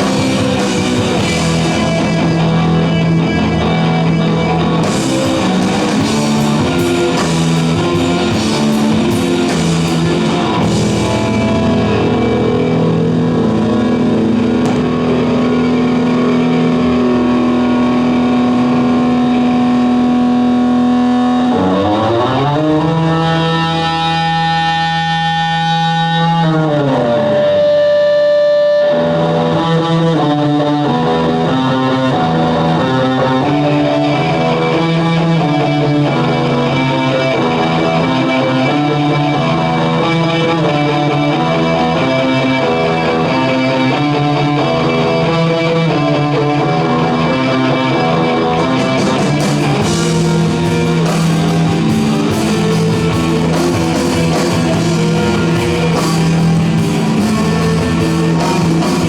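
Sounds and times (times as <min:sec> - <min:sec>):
bass line: 0:00.0 - 0:27.5, 0:31.0 - 0:59.0
electric guitars: 0:00.0 - 0:59.0
cymbals: 0:48.9 - 0:59.0.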